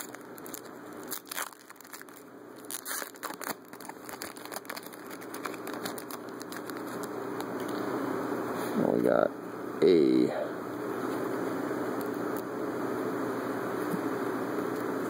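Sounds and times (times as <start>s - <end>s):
wrapper crinkling and tearing: 0.0s - 7.2s.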